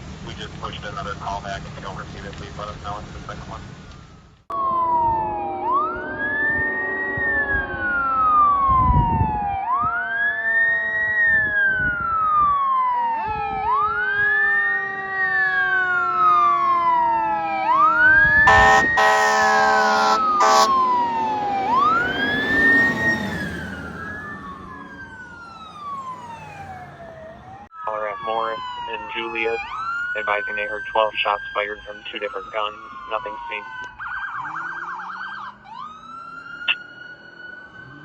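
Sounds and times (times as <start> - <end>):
fire siren wailing: 1.9 - 38.0
lower siren tone sliding down: 3.9 - 38.0
air horn blasts: 5.5 - 9.1, 18.4 - 20.8.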